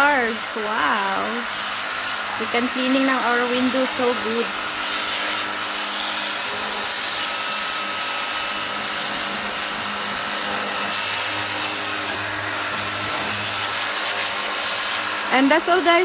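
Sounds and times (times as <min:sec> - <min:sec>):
spray hissing: 0:00.0 - 0:07.4, 0:13.2 - 0:16.0
pump motor humming: 0:00.0 - 0:16.0.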